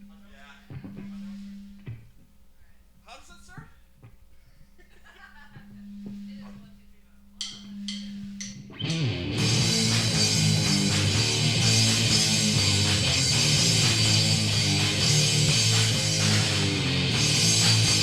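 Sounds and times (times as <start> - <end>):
low held tone: 5.6 - 18.0
rock band playing: 8.7 - 18.0.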